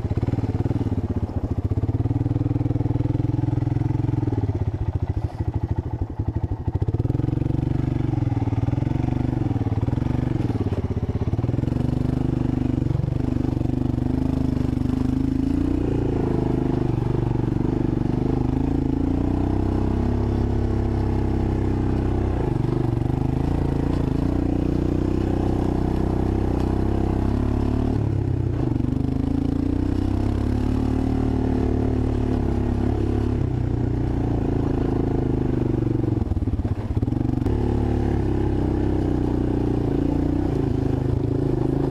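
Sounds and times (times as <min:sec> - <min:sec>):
engine revving up and down: 0:14.0 - 0:35.5.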